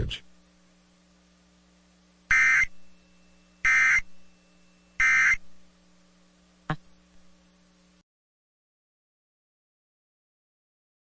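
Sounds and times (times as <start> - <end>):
buzzy digital screeches: 2.3 - 2.8, 3.6 - 4.1, 5.0 - 5.4.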